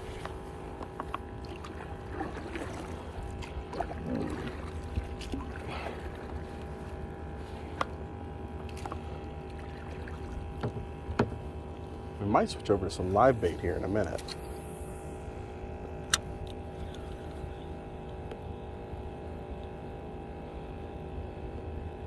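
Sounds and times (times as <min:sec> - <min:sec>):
steady low hum: 0:00.0 - 0:22.0
paddle dipping and dripping water: 0:00.2 - 0:12.0
paddle knocking against hull: 0:09.6 - 0:11.5.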